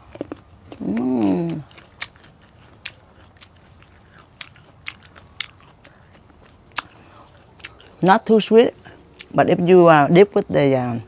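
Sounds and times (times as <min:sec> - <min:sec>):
person chewing crunchy fruit: 0:00.0 - 0:09.4
person humming: 0:00.8 - 0:01.7.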